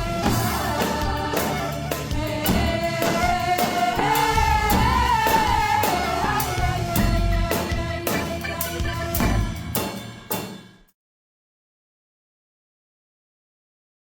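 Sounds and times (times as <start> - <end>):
steady drum beats: 0.0 - 10.9.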